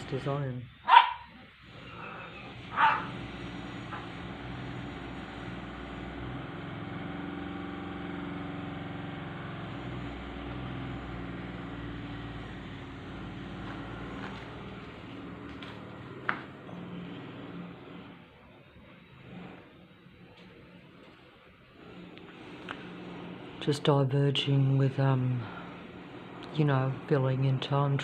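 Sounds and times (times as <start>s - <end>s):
vehicle engine humming: 0.0s - 28.0s
dog barking: 0.8s - 1.4s, 2.0s - 3.1s.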